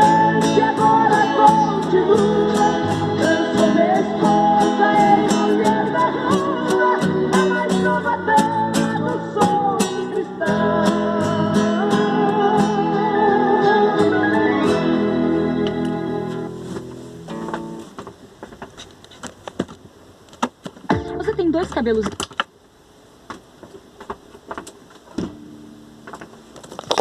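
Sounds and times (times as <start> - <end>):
acoustic guitar chords: 0.0 - 18.0, 20.9 - 22.0.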